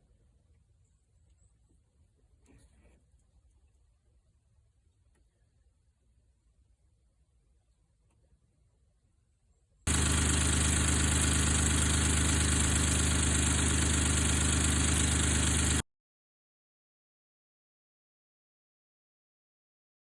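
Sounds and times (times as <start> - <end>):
car engine idling: 9.9 - 15.8.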